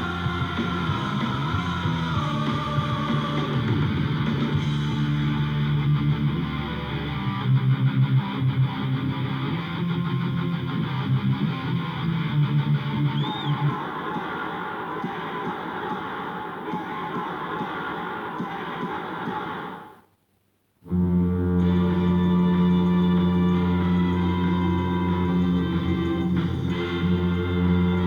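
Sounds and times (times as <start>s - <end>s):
hard rock music with electric guitar: 0.0s - 13.2s, 21.6s - 28.0s.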